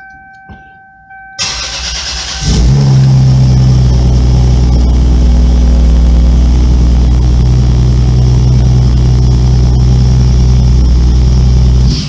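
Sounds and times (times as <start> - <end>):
starter cranking engine: 1.4 - 3.0
engine idling loudly: 1.7 - 12.0.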